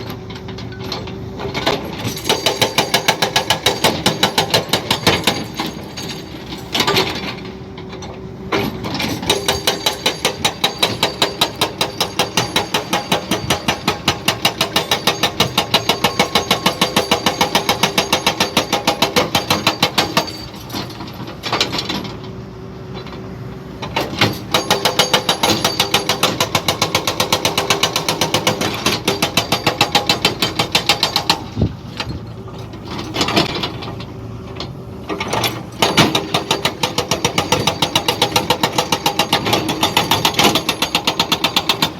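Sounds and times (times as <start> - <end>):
jackhammer hammering: 2.0 - 7.3, 9.0 - 21.8, 24.1 - 31.7, 35.2 - 41.9.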